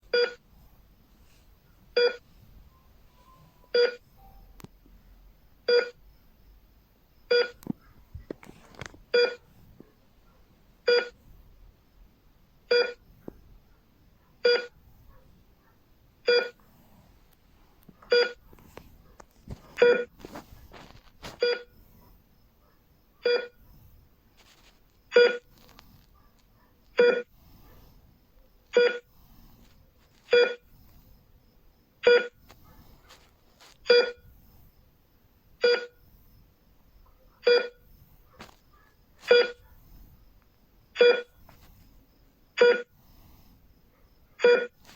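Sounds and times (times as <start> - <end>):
heart rate monitor beeping: 0.1 - 0.4, 1.9 - 4.9, 5.6 - 6.2, 7.2 - 8.5, 9.1 - 9.4, 10.8 - 11.2, 12.7 - 13.1, 14.4 - 14.8, 16.2 - 16.6, 18.1 - 18.8, 19.5 - 21.9, 23.2 - 23.7, 25.1 - 25.8, 26.9 - 27.4, 28.7 - 30.9, 32.0 - 34.3, 35.6 - 36.0, 37.4 - 39.7, 40.9 - 41.6, 42.5 - 43.2, 44.4 - 44.9.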